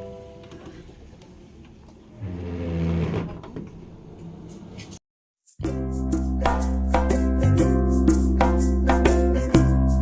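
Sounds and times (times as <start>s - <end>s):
background music: 5.5s - 10.0s.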